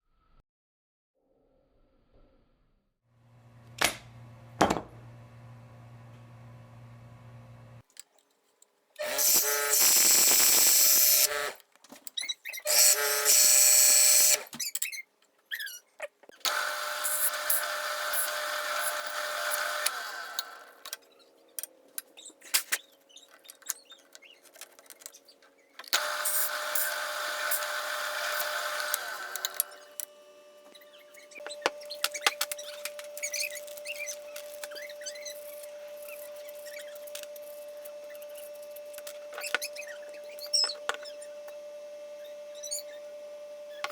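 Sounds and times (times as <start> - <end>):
steady motor hum: 3.2 - 7.8, 16.5 - 20.8, 26.0 - 43.8
power tools cutting wood: 9.0 - 11.6, 12.7 - 14.6, 16.4 - 21.0, 25.9 - 43.9.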